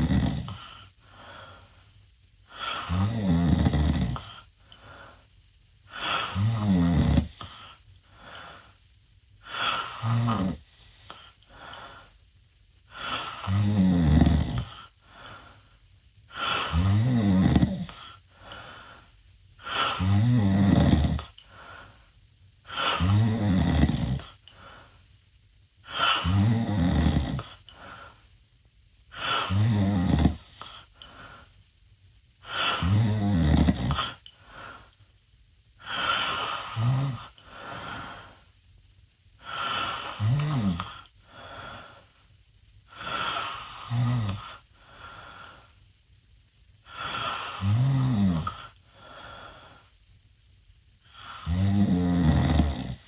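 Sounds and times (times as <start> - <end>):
boy snoring loudly: 0.0 - 0.8, 2.5 - 4.4, 5.9 - 7.6, 9.4 - 11.2, 12.9 - 14.9, 16.3 - 18.0, 19.6 - 21.4, 22.7 - 24.4, 25.9 - 27.6, 29.1 - 30.7, 32.5 - 34.2, 35.8 - 38.0, 39.4 - 41.1, 42.9 - 44.6, 46.9 - 48.8, 51.1 - 53.0
quiet out-breath: 0.0 - 2.8, 4.2 - 6.2, 10.8 - 12.2, 14.8 - 16.5, 17.9 - 19.8, 30.6 - 31.6, 44.3 - 45.8, 48.5 - 50.0.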